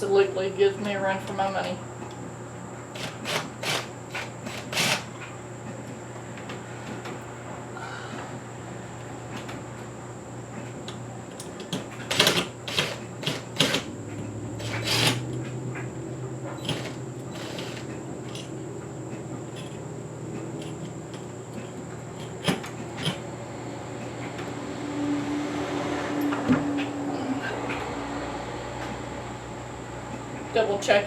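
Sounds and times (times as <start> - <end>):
steady low hum: 0.0 - 31.0
fan parts clicking and clattering: 2.9 - 7.5, 9.0 - 24.9.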